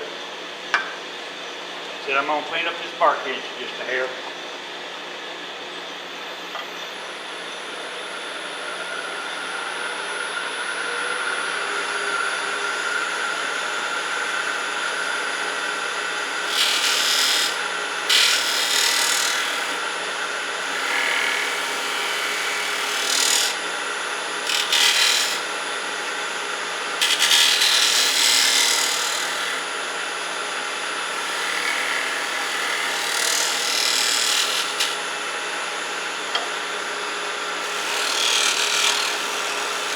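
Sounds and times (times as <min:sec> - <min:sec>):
wood lathe running: 0:07.0 - 0:39.9
turning tool cutting wood: 0:07.3 - 0:39.9.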